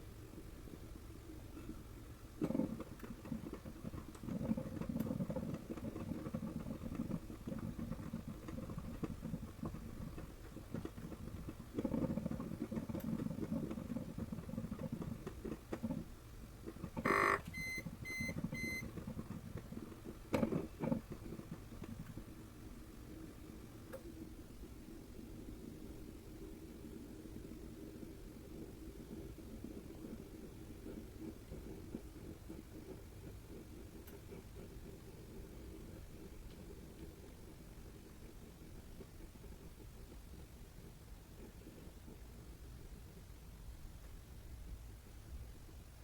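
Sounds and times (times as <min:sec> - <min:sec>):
coffee maker rumbling: 0:01.6 - 0:22.3
quick electronic beeps: 0:17.1 - 0:18.8.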